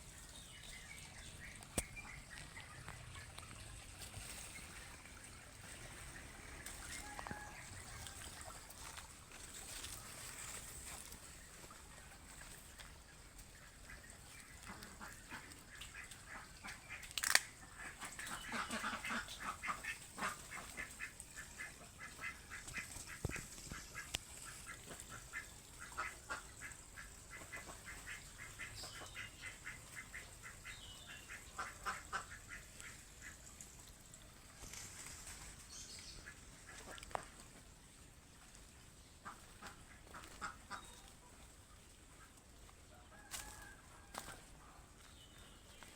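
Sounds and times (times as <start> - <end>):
fowl calling rapidly: 5.8 - 8.7.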